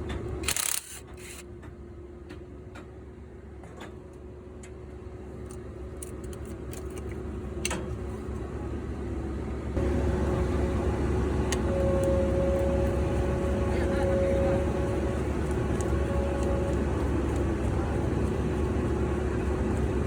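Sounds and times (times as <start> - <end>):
diesel truck engine running: 4.3 - 20.0
higher steady tone: 9.8 - 20.0.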